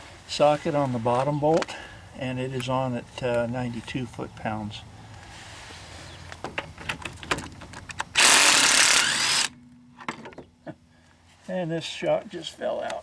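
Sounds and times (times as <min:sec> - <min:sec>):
impact driver hammering: 0:08.2 - 0:10.3.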